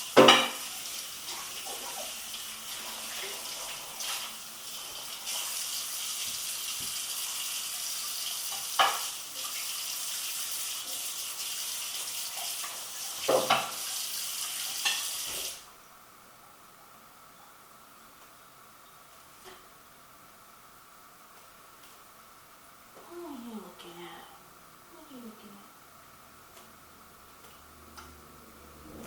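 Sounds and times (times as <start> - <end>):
steady kitchen hissing: 0.0 - 29.0
dishes clinking: 0.2 - 0.6, 8.6 - 9.2.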